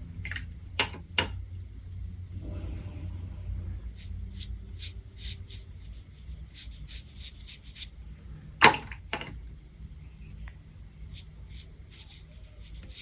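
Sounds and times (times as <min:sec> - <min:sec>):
low steady hum: 0:00.0 - 0:13.0
light scratchy strokes: 0:02.3 - 0:08.5, 0:09.6 - 0:13.0.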